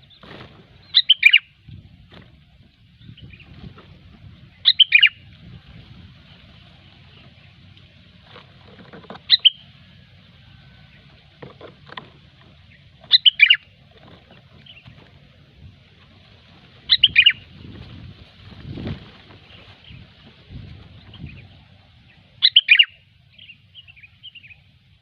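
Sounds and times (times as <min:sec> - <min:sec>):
bird chirpy calls: 0:00.0 - 0:01.6, 0:04.4 - 0:05.3, 0:09.1 - 0:11.3, 0:12.5 - 0:15.1, 0:16.8 - 0:17.8, 0:21.0 - 0:24.7.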